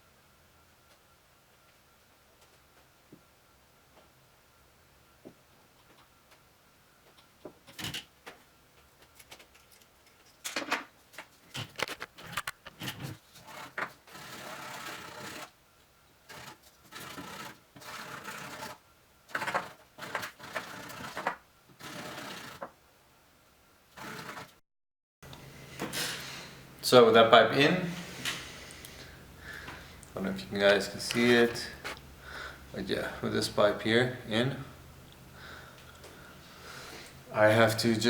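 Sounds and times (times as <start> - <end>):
hands working tubing and fittings: 7.1 - 15.6, 16.3 - 22.8, 28.1 - 32.1.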